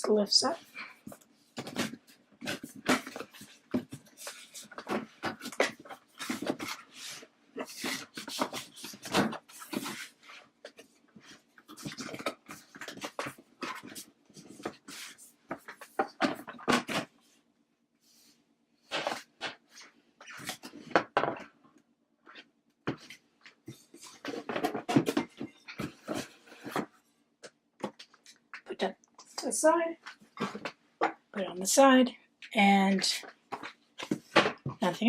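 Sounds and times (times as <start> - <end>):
cardboard packaging rustling: 0.7 - 17.2.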